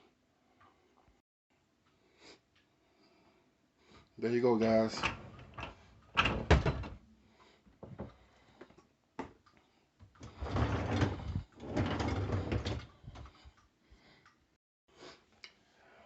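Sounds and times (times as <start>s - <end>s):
dishwasher rack sliding and rattling: 4.8s - 7.0s, 10.2s - 13.3s.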